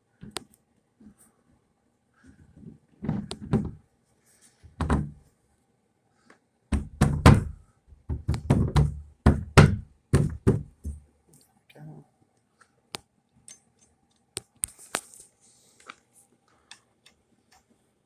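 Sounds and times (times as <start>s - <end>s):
sharp knocks and thuds: 4.8s - 5.2s, 6.7s - 11.0s.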